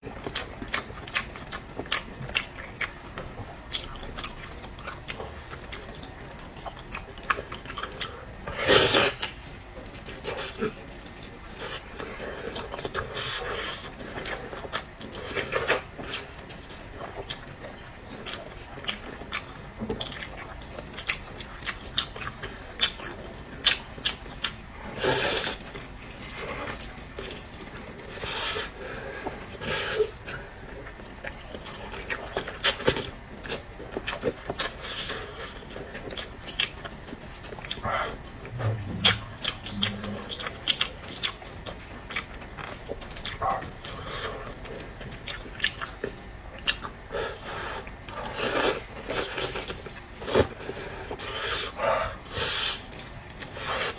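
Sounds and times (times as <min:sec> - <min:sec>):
chewing and mouth smacking: 0:00.2 - 0:08.2, 0:09.2 - 0:24.6, 0:30.1 - 0:47.0.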